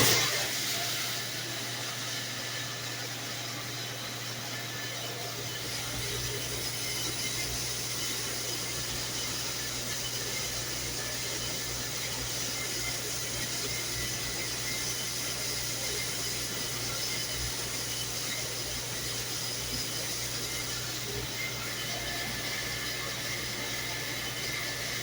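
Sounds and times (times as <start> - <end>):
dishwasher rushing hiss: 0.0 - 2.9.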